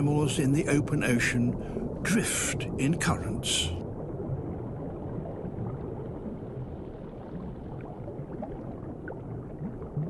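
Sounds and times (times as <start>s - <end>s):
underwater rush of water: 0.0s - 10.0s
small bubbling pops: 4.1s - 10.0s.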